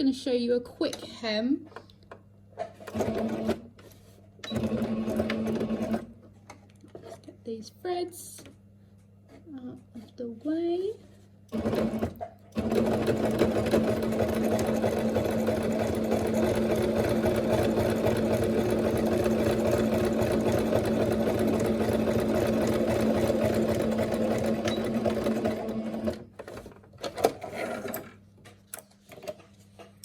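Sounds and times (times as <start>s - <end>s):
sewing machine stitching: 2.8s - 3.7s, 4.4s - 6.1s, 11.5s - 28.1s.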